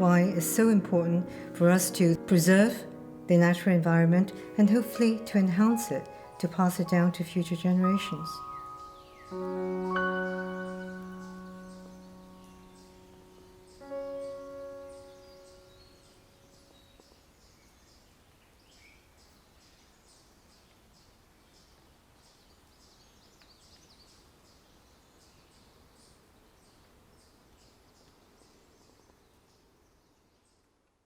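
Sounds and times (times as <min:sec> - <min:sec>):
piano chord: 0:00.0 - 0:16.9
low hiss: 0:00.0 - 0:31.0
small birds chirping: 0:03.4 - 0:30.8.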